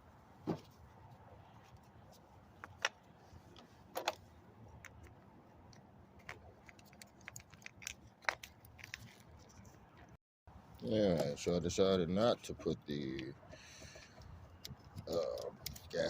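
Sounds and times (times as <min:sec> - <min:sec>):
small parts clicking and tapping: 0:04.8 - 0:09.7, 0:13.8 - 0:16.0.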